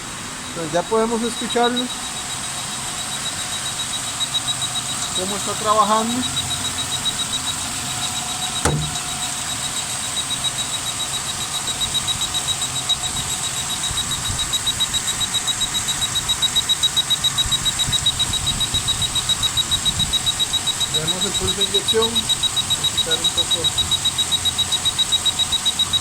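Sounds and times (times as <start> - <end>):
car engine idling: 0.0 - 14.0, 20.2 - 26.0.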